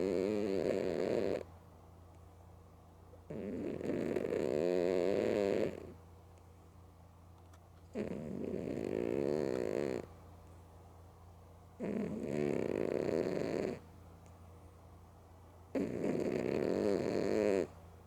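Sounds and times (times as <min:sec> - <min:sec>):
cat snoring: 0:00.0 - 0:01.5, 0:03.3 - 0:06.0, 0:07.9 - 0:10.1, 0:11.8 - 0:13.8, 0:15.7 - 0:17.8.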